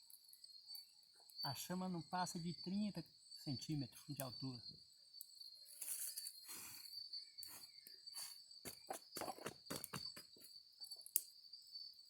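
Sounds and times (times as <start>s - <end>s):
crickets chirring: 0.0s - 12.0s
twigs and leaves crackling: 5.7s - 6.8s.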